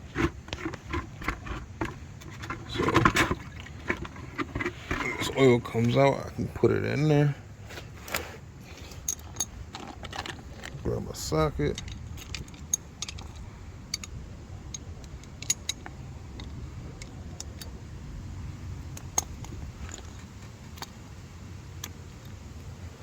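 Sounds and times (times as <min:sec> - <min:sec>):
low steady rumble: 0:00.0 - 0:23.0
metallic clicks of hand tools: 0:11.6 - 0:17.7.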